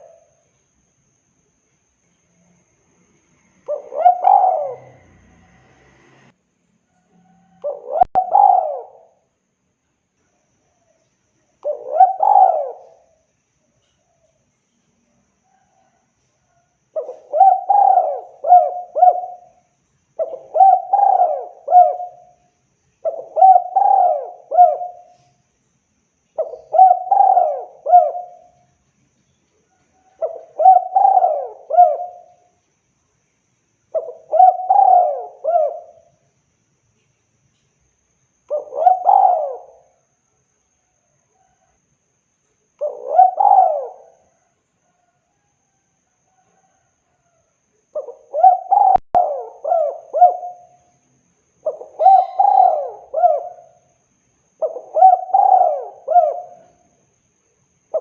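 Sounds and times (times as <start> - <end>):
dove cooing: 0.0 - 0.4, 3.6 - 5.8, 7.2 - 9.2, 11.6 - 13.2, 16.6 - 25.3, 26.4 - 28.6, 30.0 - 32.5, 33.9 - 36.2, 38.5 - 40.0, 42.8 - 45.8, 47.9 - 50.9, 51.6 - 53.9, 54.6 - 57.0.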